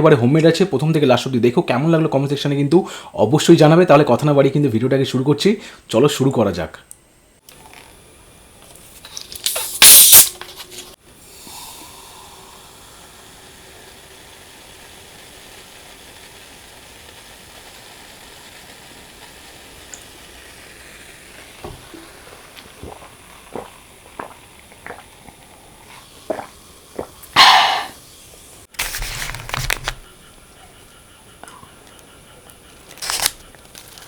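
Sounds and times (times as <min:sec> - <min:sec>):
faint hiss: 0:07.4 - 0:34.0.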